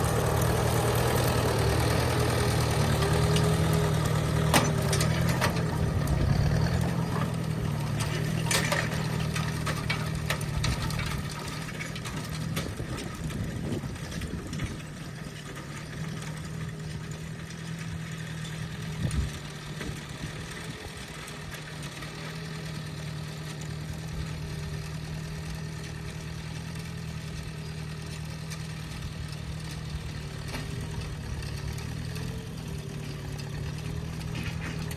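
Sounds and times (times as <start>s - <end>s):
tractor engine running: 0.0s - 34.9s
sharp engine knocks: 2.9s - 13.4s.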